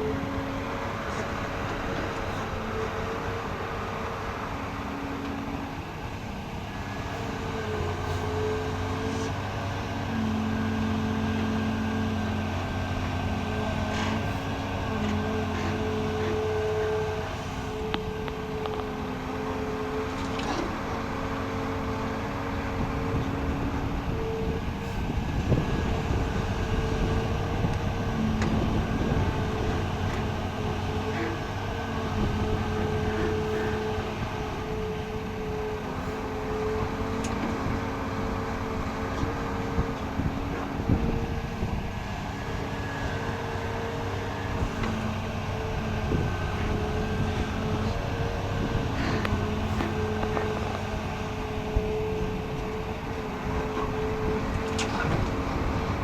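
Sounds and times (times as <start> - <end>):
excavator engine running: 0.0 - 56.0.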